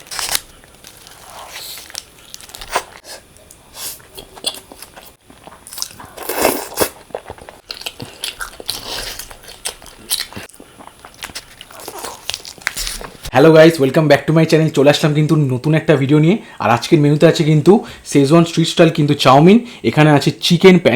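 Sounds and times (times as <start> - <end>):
crunchy bites and chewing: 0.0 - 3.0, 4.0 - 13.3.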